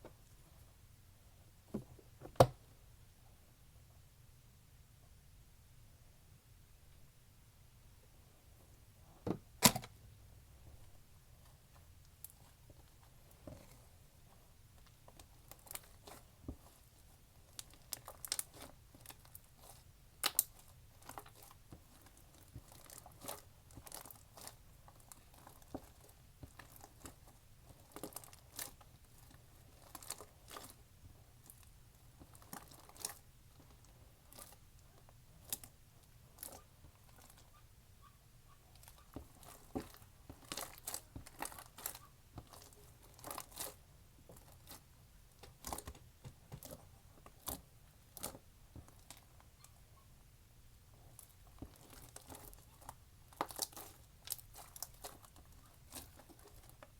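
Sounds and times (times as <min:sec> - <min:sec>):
slime crackling and popping: 0:17.5 - 0:30.8, 0:51.0 - 0:56.9.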